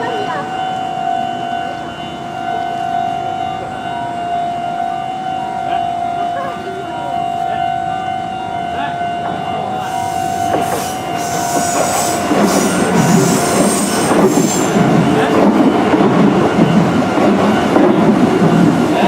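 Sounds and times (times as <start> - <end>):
train rumbling past: 0.0 - 19.0
wheels squealing on rails: 8.8 - 19.0.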